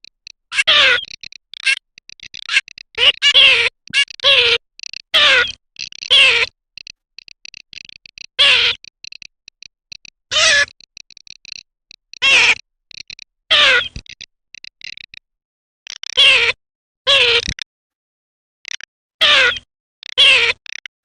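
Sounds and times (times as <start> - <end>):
dry clicking rattles: 0.0 - 13.4, 14.0 - 15.3
duck calls falling in pitch: 0.5 - 4.6, 5.2 - 6.9, 7.5 - 9.3, 10.3 - 10.8, 12.2 - 12.6, 13.5 - 14.1.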